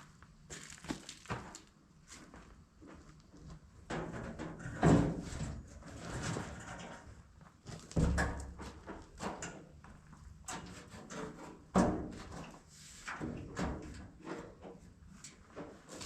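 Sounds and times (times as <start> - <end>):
knocks and clatters on farm machinery: 3.8 - 9.8, 10.4 - 16.0.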